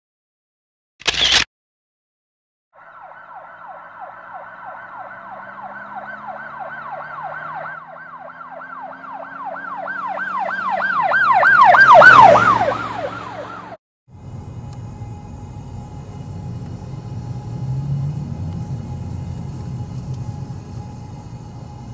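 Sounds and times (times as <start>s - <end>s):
siren yelping: 2.8s - 13.8s
faint traffic hum: 3.1s - 21.9s
vehicle engine rumble: 3.3s - 21.9s.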